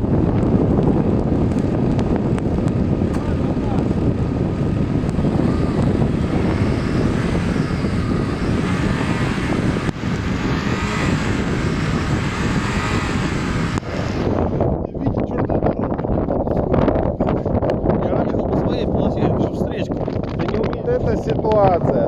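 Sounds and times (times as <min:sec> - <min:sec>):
car engine straining: 0:00.0 - 0:14.8
wind noise on microphone: 0:00.0 - 0:22.0.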